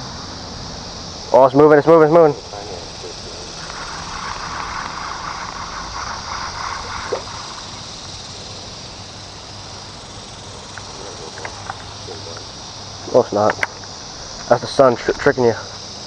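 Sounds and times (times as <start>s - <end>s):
insects droning: 0.0s - 16.0s
creek water gurgling: 2.4s - 12.6s.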